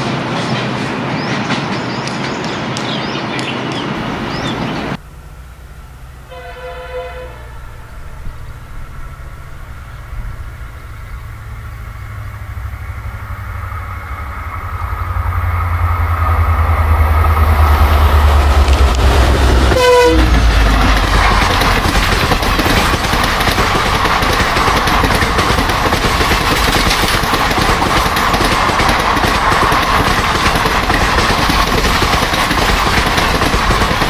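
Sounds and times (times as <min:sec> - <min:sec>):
diesel locomotive engine rumble: 0:00.0 - 0:34.0
train chime horn: 0:06.3 - 0:07.8, 0:19.7 - 0:20.4
train wheels clattering: 0:12.7 - 0:34.0.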